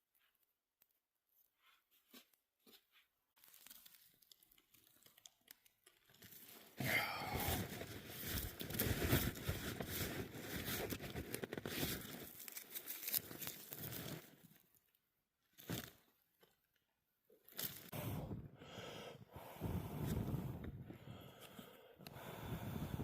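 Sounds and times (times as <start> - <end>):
rustling and tearing dry material: 0.0 - 6.8, 7.5 - 14.8.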